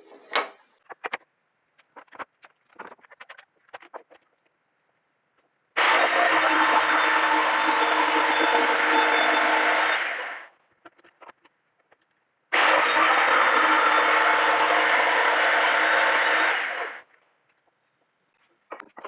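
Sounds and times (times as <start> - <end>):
power tool running on wood: 5.8 - 10.5, 12.6 - 17.0.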